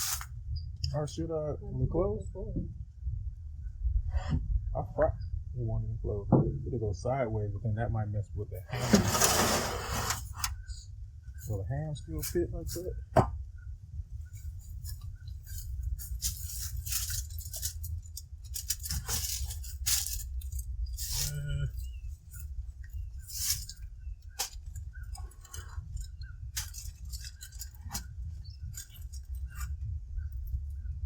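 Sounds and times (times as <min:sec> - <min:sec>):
steady low rumble: 0:00.0 - 0:31.0
foil crinkling: 0:16.1 - 0:21.1, 0:26.6 - 0:29.7.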